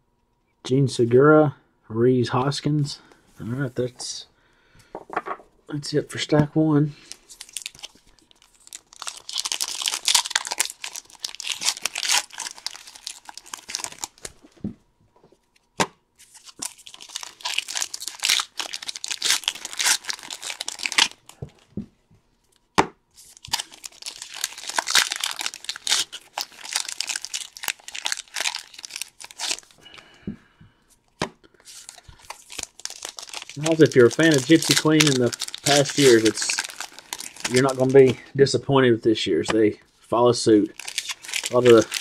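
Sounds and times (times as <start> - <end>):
foil wrappers tearing and crinkling: 7.0 - 14.5, 16.2 - 21.6, 23.2 - 29.8, 31.6 - 38.2, 40.7 - 42.0.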